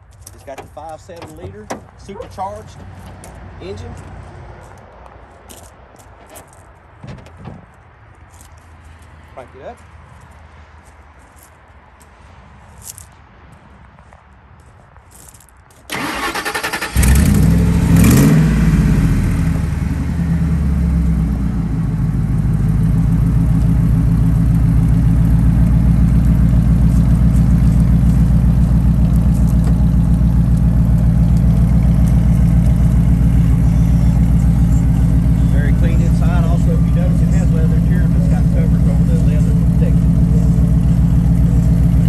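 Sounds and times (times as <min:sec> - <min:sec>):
car engine starting and idling: 0:00.4 - 0:04.1, 0:15.9 - 0:42.0
starter motor cranking: 0:15.9 - 0:17.5.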